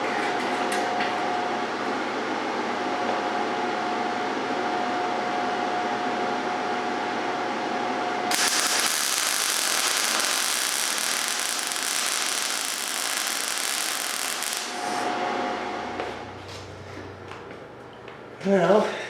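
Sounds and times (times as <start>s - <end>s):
steady hum: 8.1s - 18.4s
welding arc hissing: 8.3s - 15.1s.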